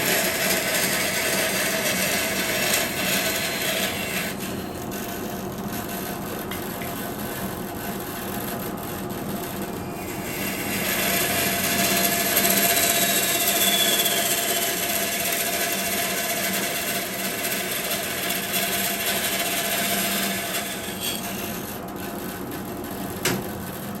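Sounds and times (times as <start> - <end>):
saw blade cutting wood: 0.0 - 5.0, 10.0 - 21.7
bandsaw motor hum: 0.0 - 8.0, 8.6 - 24.0.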